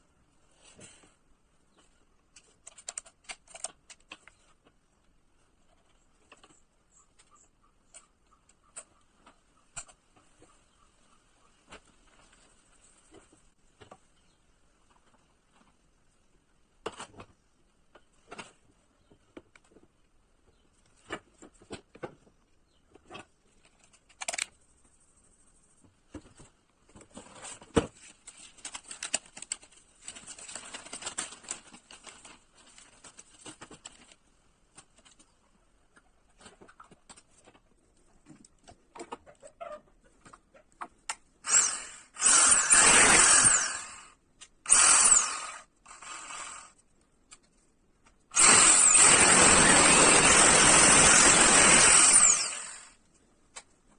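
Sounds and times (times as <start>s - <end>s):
drill motor running: 41.5s - 44.1s, 44.7s - 46.7s, 48.4s - 53.0s.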